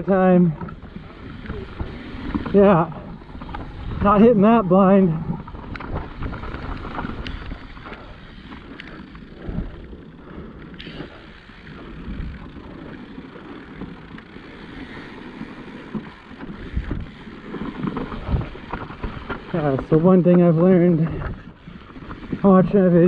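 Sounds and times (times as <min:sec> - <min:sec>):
bike knocking and rattling: 0:00.0 - 0:23.0
bike tyres rolling on dirt: 0:00.0 - 0:23.0
wind on the microphone: 0:00.5 - 0:08.4, 0:16.5 - 0:17.2, 0:17.8 - 0:20.0.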